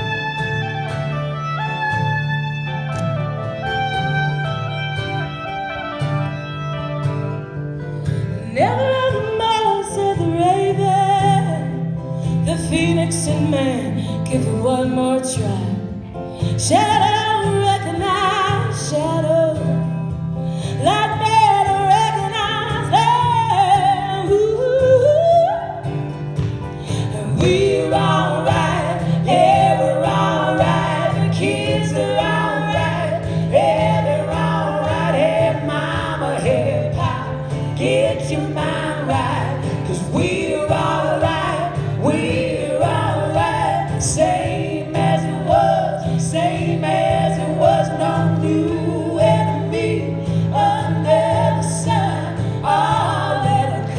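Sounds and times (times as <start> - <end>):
voices singing folk song: 0.0 - 7.3, 8.0 - 53.9
instrumental accompaniment: 0.0 - 8.0.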